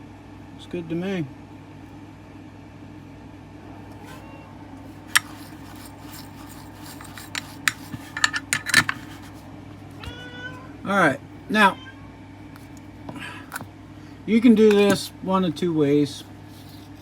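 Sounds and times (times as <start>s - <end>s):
steady low hum: 0.0s - 10.0s
small tools clicking and clattering: 5.0s - 9.3s, 14.6s - 15.0s.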